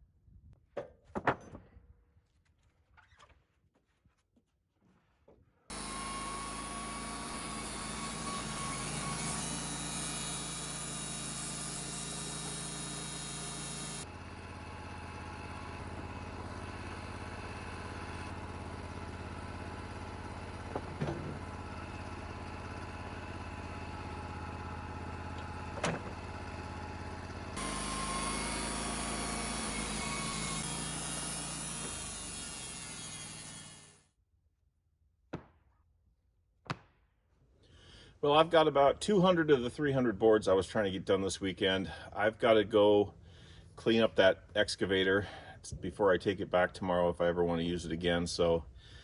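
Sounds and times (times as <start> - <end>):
engine running: 5.7 - 33.9.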